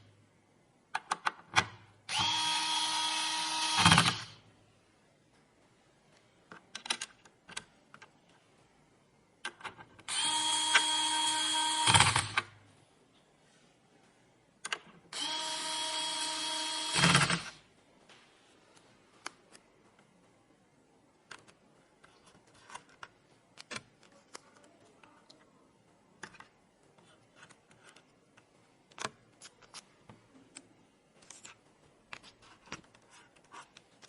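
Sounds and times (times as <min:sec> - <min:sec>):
electric screwdriver whirring: 0:02.1 - 0:04.4, 0:10.1 - 0:12.4, 0:15.2 - 0:17.6.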